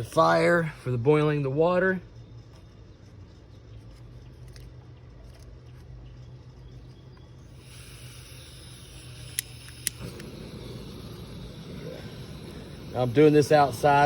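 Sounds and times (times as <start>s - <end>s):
low steady hum: 0.0s - 14.0s
sharp clicks: 9.0s - 10.8s
steady rushing noise: 9.8s - 14.0s.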